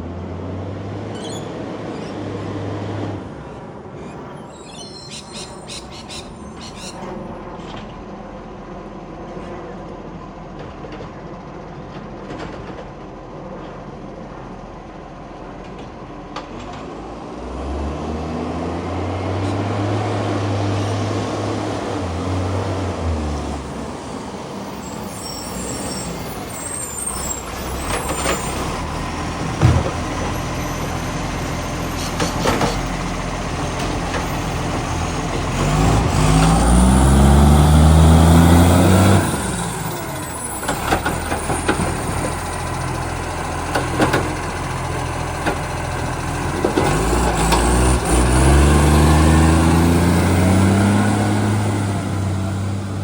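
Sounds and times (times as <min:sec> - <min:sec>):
diesel engine revving: 0:16.6 - 0:53.0.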